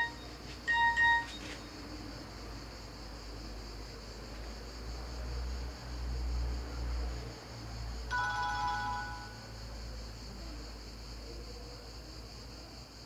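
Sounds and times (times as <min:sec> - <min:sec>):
chiming phone ringtone: 0:00.7 - 0:01.6, 0:08.1 - 0:09.5.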